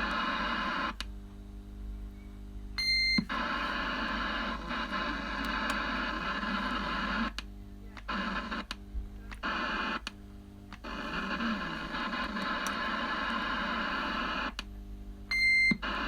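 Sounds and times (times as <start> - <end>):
radio static hiss: 0.0 - 1.0, 3.2 - 10.1, 10.8 - 14.6, 15.7 - 16.0.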